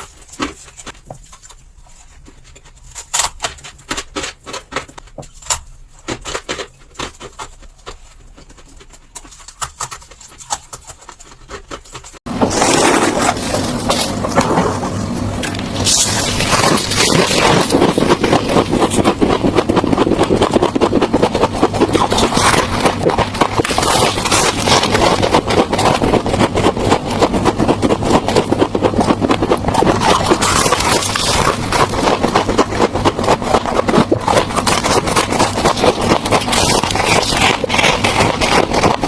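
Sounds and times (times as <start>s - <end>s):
scraping crunchy frost: 12.2s - 39.0s.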